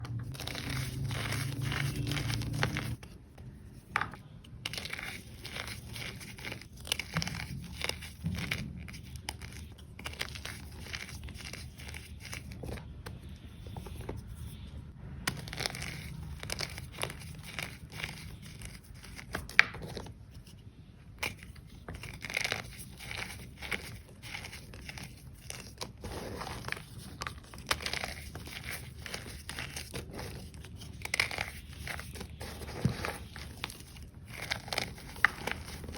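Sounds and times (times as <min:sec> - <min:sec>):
chalk crunching and snapping: 0:21.2 - 0:35.9.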